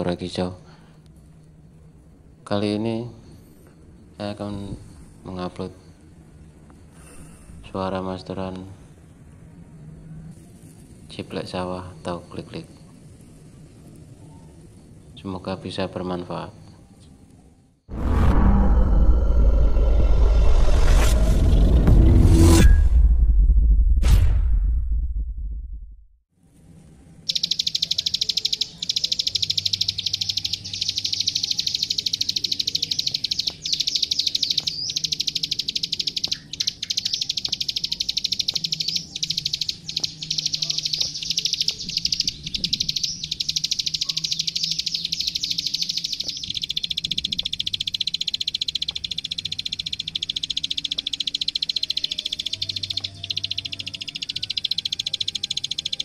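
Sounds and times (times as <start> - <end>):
bird clicking trill: 27.3 - 56.0.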